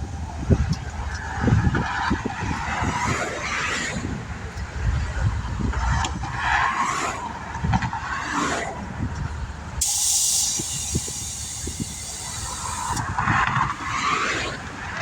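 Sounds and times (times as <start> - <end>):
traffic rumbling past: 0.0 - 15.0
compressed air hiss: 9.8 - 13.3.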